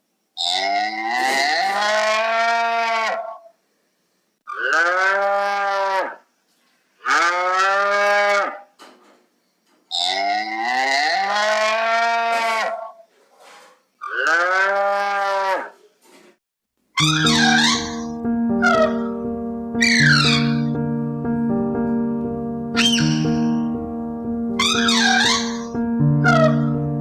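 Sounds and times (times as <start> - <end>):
cow mooing: 0.5 - 3.4, 4.6 - 6.2, 7.1 - 8.6, 10.0 - 13.0, 14.0 - 15.8, 24.6 - 26.8.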